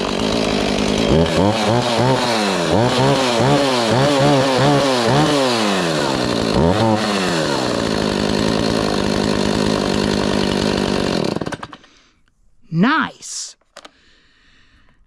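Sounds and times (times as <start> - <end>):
chainsaw throttle blip: 0.0 - 12.0
chainsaw idling: 0.0 - 12.1.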